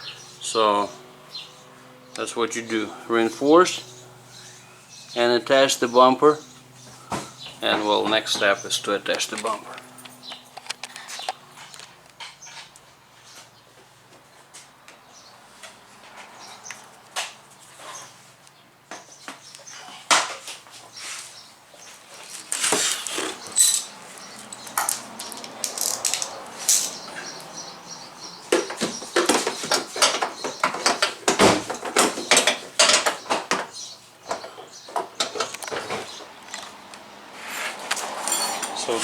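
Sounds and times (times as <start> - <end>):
plastic bumper cover rattling: 28.5 - 36.2.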